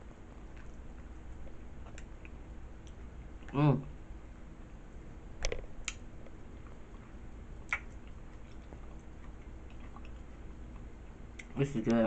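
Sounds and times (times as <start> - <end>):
mouth eating nachos: 5.8 - 12.0.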